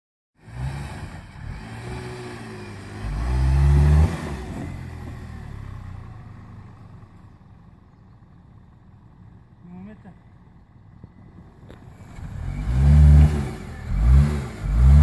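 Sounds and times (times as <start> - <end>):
engine revving: 0.4 - 6.3, 11.8 - 15.0.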